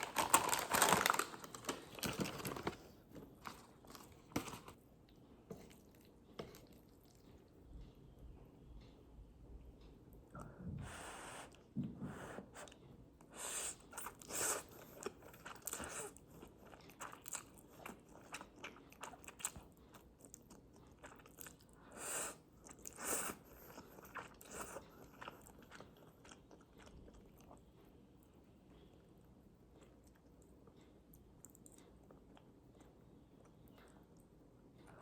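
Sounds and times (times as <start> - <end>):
person chewing crunchy food: 13.8 - 21.8, 22.6 - 27.8.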